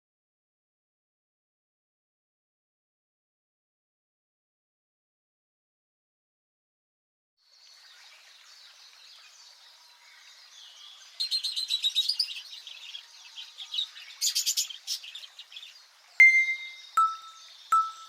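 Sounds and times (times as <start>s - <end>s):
small birds chirping: 7.4s - 18.0s
bright chime ding: 16.2s - 18.0s.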